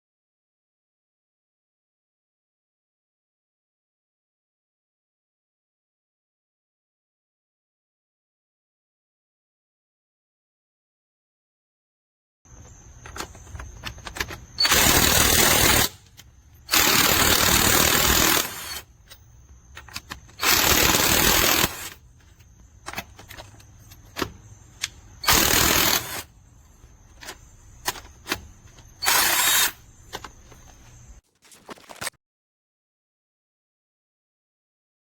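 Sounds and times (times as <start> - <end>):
small clicks and knocks: 12.6 - 14.6, 22.2 - 25.0, 26.7 - 28.9
impact wrench hammering: 25.2 - 26.3.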